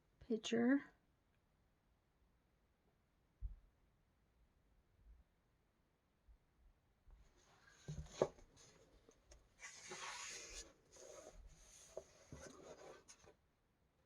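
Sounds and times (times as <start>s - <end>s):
paper pages rustling: 7.5s - 13.3s.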